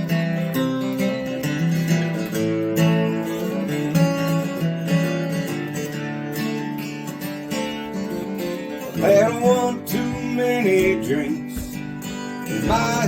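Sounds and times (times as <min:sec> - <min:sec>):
strummed acoustic guitar: 0:00.0 - 0:13.0.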